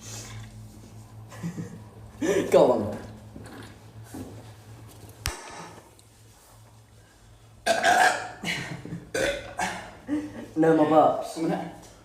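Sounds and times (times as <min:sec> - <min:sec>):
boy burping: 0:07.6 - 0:09.9.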